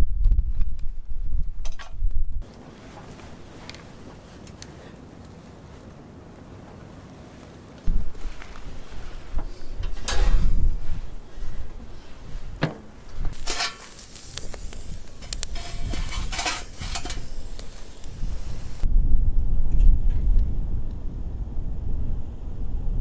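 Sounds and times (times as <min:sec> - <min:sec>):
wind rumble on microphone: 0:00.0 - 0:02.5, 0:07.8 - 0:23.0
metal items clinking and rattling: 0:13.3 - 0:18.0.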